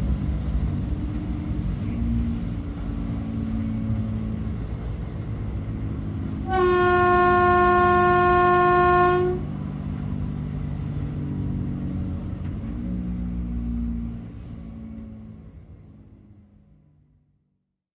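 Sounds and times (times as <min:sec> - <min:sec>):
train ride rumble: 0:00.0 - 0:17.2
train horn blast: 0:06.4 - 0:09.6.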